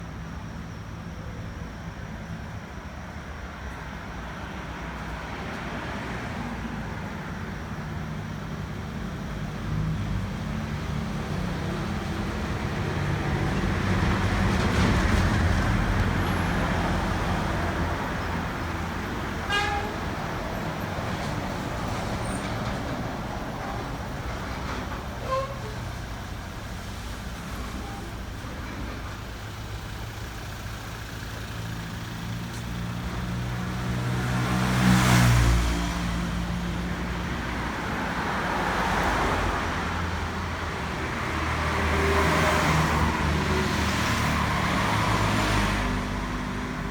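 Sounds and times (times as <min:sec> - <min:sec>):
vehicle passing by: 0:31.5 - 0:46.9.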